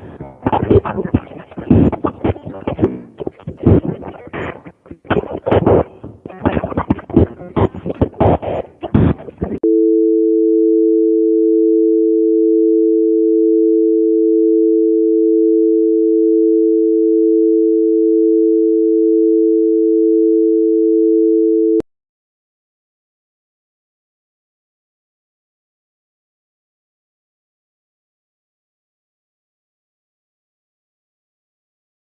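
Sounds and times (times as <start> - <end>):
choppy phone voice: 0.0 - 9.6.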